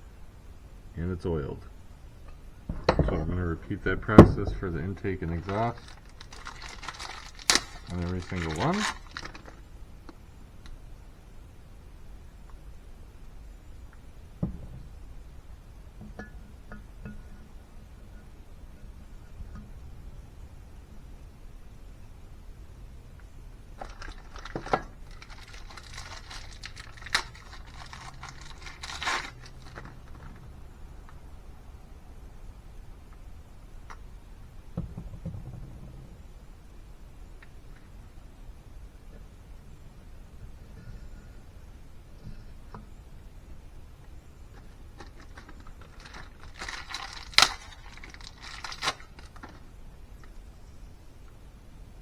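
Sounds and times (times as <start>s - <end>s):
rustling handling noise: 2.7s - 10.2s, 23.7s - 30.6s, 44.5s - 50.6s
rustle: 3.8s - 34.7s, 36.5s - 52.0s
small metal parts clinking: 5.0s - 9.6s, 23.8s - 30.4s, 45.0s - 49.7s.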